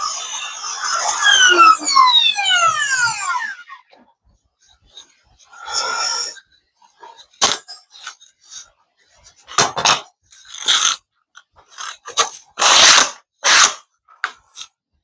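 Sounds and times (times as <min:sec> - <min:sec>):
hand tool rasping strokes: 0:00.0 - 0:03.6.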